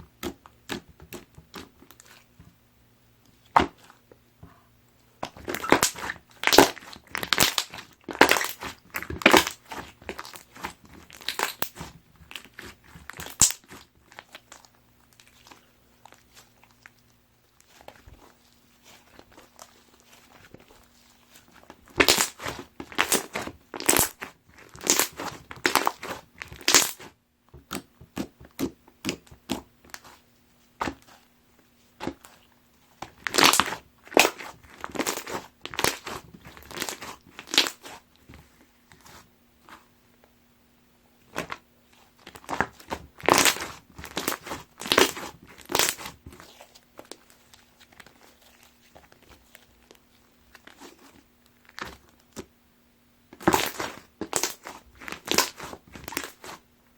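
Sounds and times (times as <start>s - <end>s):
slime squishing with popping clicks: 5.2s - 9.6s, 13.1s - 13.8s.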